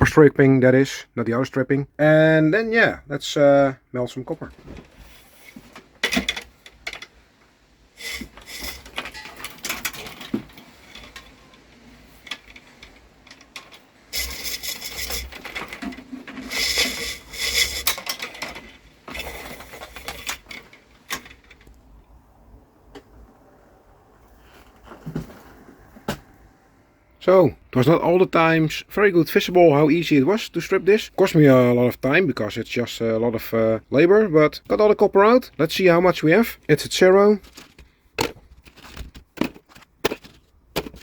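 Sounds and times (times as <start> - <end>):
knife slitting cable insulation: 14.1 - 18.5, 37.4 - 41.0.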